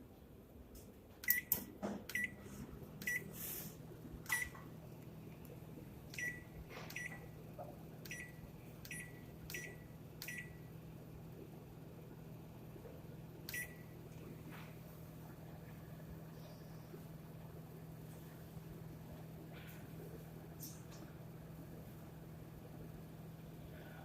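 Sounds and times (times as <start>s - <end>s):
microwave oven humming: 0.0s - 24.0s
microwave keypad beeps: 1.2s - 2.4s, 3.0s - 3.3s, 4.2s - 4.6s, 6.1s - 7.3s, 8.0s - 10.7s, 13.5s - 13.9s.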